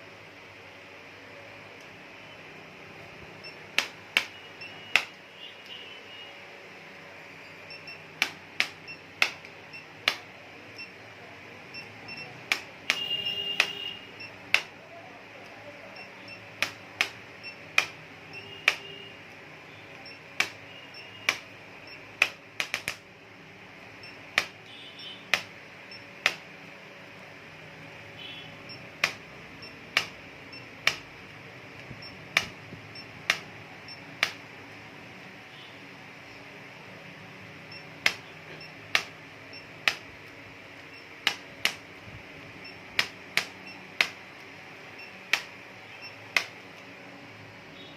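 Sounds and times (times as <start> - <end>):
sharp taps: 3.8 - 5.2, 8.2 - 10.3, 12.4 - 13.9, 14.5 - 14.8, 16.6 - 19.0, 22.2 - 23.0, 24.4 - 24.7, 25.3 - 25.5, 26.2 - 26.5, 29.0 - 29.3, 29.9 - 30.2, 30.8 - 31.1, 38.0 - 38.3, 38.9 - 39.2, 39.8 - 40.1, 41.2 - 41.9, 42.9 - 44.2, 45.2 - 45.6, 46.3 - 46.6.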